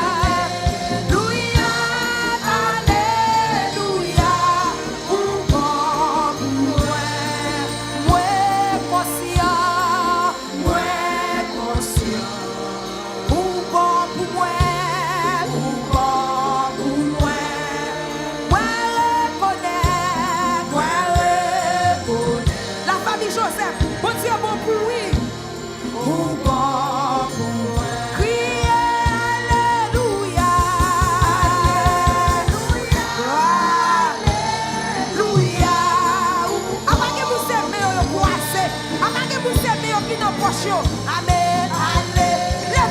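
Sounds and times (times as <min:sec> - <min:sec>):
band playing: 0:00.0 - 0:42.9
lead vocal singing with vibrato: 0:00.0 - 0:42.9
steady drum beat: 0:00.0 - 0:42.9.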